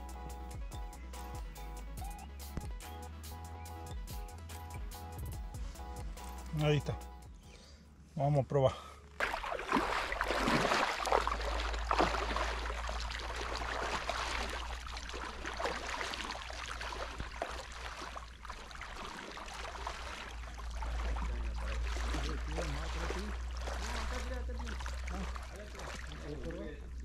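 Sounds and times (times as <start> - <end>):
river water rushing: 9.2 - 26.0.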